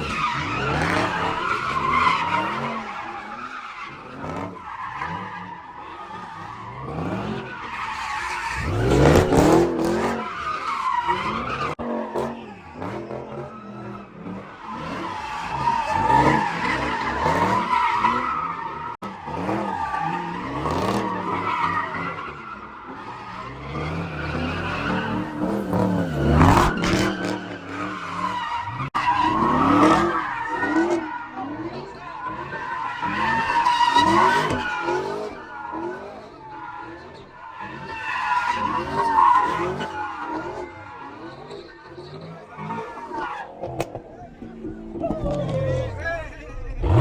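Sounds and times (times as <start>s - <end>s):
car tyres squealing: 0.0s - 47.0s
engine revving: 23.4s - 28.3s, 43.7s - 47.0s.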